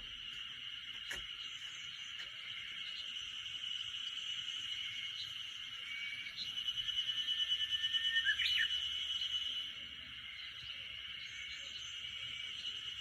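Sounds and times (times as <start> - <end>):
high-pitched insect chorus: 0.0 - 13.0
thin held bird whistle: 7.2 - 9.6.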